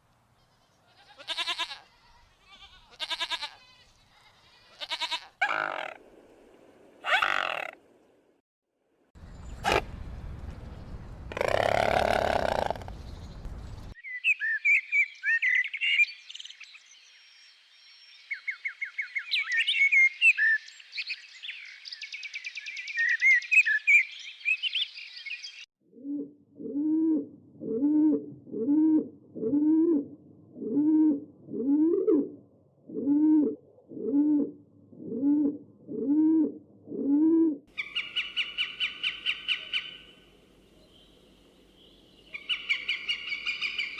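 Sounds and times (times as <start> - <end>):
loud animal call: 4.8 - 6.0, 7.0 - 7.8, 11.3 - 12.9
birdsong chirps and twitters: 12.7 - 25.7, 37.7 - 43.9
low evenly spaced calls: 32.9 - 41.1, 41.8 - 43.9.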